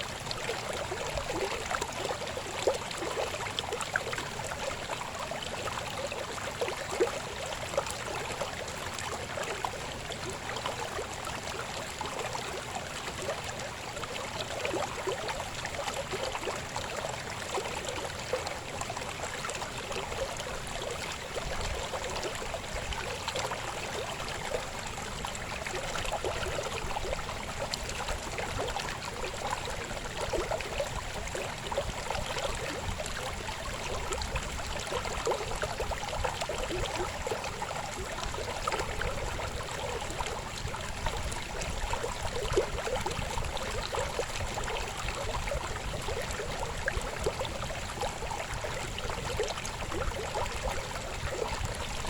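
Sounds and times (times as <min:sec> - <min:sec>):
babbling river flowing: 0:00.0 - 0:52.0
water splashes: 0:00.0 - 0:52.0.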